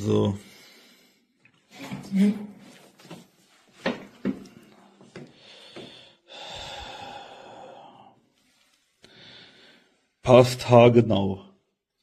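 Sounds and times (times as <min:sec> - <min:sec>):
long breath out: 0:05.3 - 0:08.4, 0:09.0 - 0:10.1.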